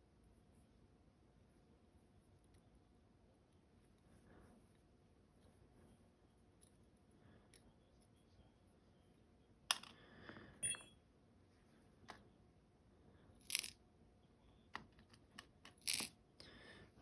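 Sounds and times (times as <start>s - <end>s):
small metallic clicks and clinks: 10.6s - 11.0s, 15.0s - 16.2s.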